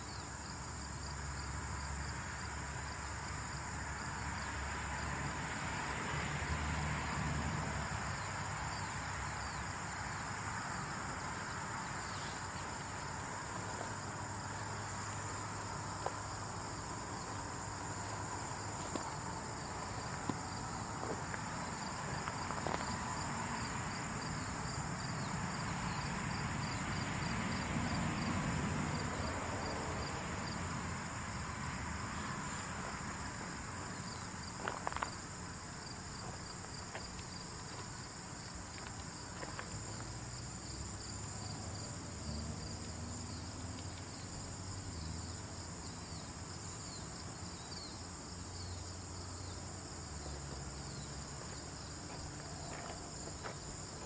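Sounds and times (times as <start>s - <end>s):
crickets chirping: 0.0s - 54.0s
high insect trill: 0.0s - 54.0s.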